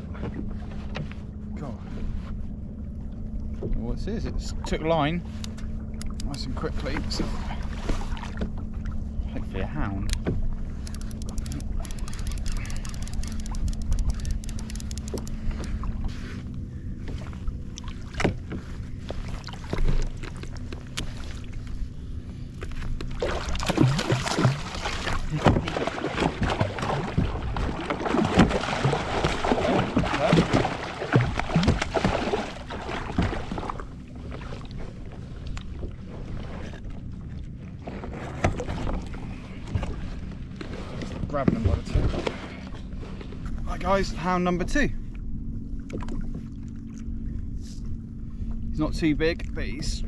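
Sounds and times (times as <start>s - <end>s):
water slapping around kayak: 0.0s - 44.6s
fish thrashing and splashing: 10.9s - 15.9s, 23.1s - 34.8s.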